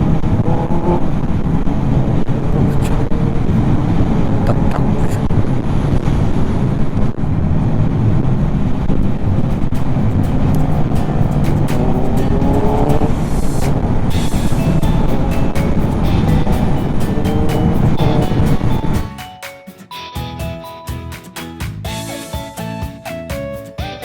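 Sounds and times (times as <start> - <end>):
wind rush: 0.0 - 19.1
motorcycle engine running: 8.3 - 19.1.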